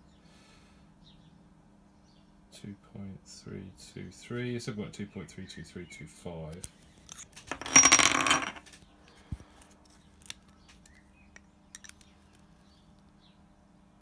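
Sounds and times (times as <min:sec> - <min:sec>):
cartridges clinking and rattling: 0:07.0 - 0:08.7, 0:11.3 - 0:12.1.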